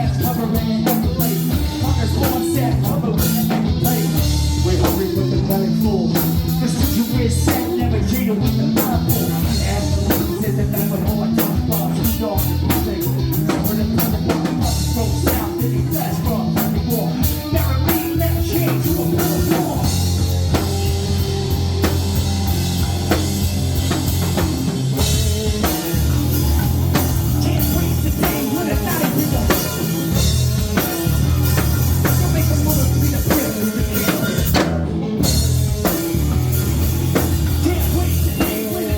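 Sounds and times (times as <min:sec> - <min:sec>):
person singing: 0:00.0 - 0:23.2, 0:25.0 - 0:36.2, 0:37.2 - 0:38.9
drum kit steady beat: 0:00.0 - 0:38.9
guitar: 0:00.0 - 0:38.9
live band playing upbeat music: 0:00.0 - 0:38.9.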